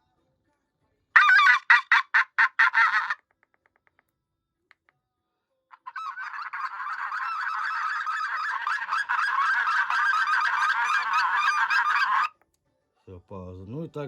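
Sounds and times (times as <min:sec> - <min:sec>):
geese honking through speaker: 0:01.2 - 0:03.2, 0:05.8 - 0:12.3.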